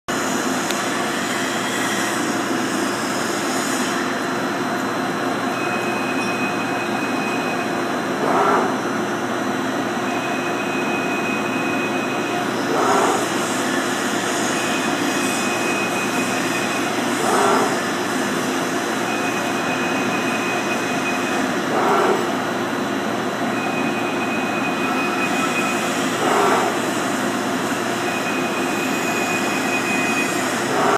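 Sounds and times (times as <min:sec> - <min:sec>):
lathe cutting thread: 0:08.0 - 0:09.3, 0:11.7 - 0:22.6, 0:24.6 - 0:30.9.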